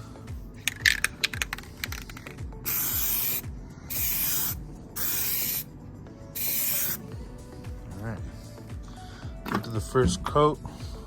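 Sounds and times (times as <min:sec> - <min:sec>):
spray paint can hissing: 0:00.6 - 0:05.7, 0:06.4 - 0:07.0.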